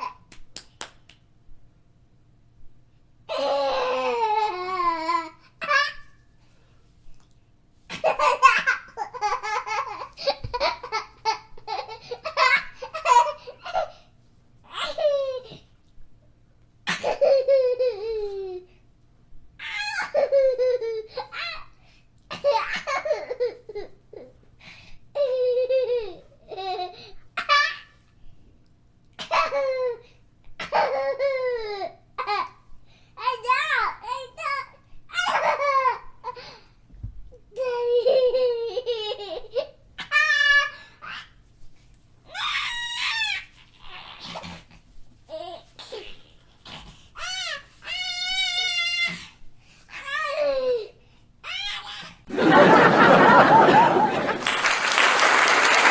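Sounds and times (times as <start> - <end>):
shrieking laugh: 52.3 - 54.6.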